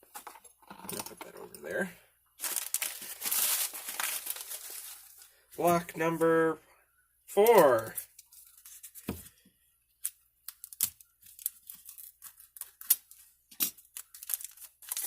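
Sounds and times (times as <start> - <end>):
packaging crinkling and tearing: 2.4 - 5.4, 10.4 - 15.0.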